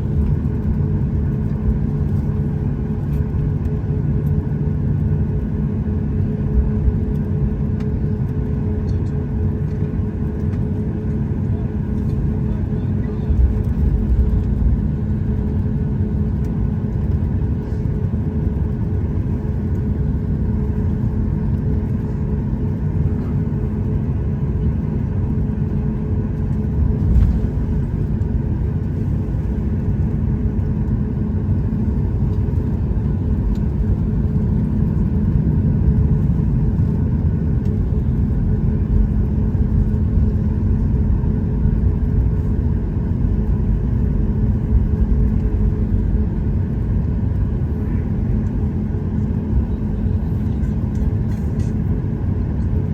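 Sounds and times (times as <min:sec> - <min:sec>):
jet engine cabin rumble: 0:00.0 - 0:52.9
steady hums: 0:19.2 - 0:52.9.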